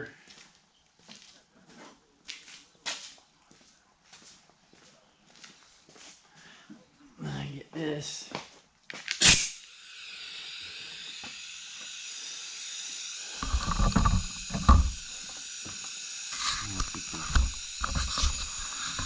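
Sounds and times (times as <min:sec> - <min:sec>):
compressed air blow gun hissing: 0:09.2 - 0:19.0
rubber grip bumping and rubbing: 0:13.4 - 0:15.0.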